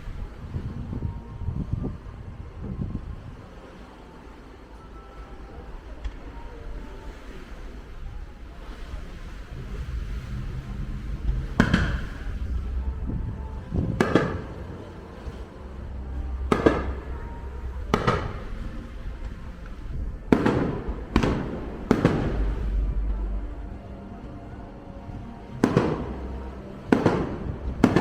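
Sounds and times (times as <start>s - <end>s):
wind on microphone: 0.0s - 4.0s, 5.5s - 28.0s
fireworks booming: 10.1s - 12.8s, 13.8s - 15.4s, 16.2s - 19.4s, 20.2s - 23.1s, 25.6s - 26.3s, 26.9s - 28.0s.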